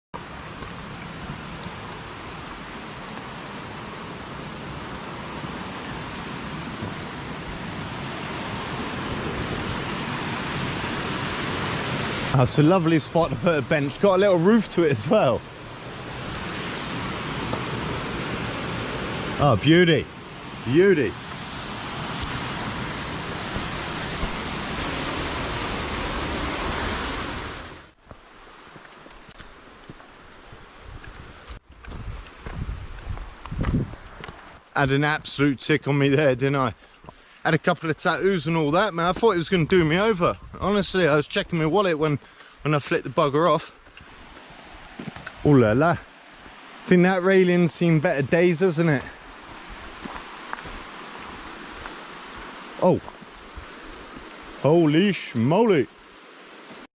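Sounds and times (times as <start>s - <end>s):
rushing flowing water: 0.2s - 31.6s, 34.2s - 56.9s.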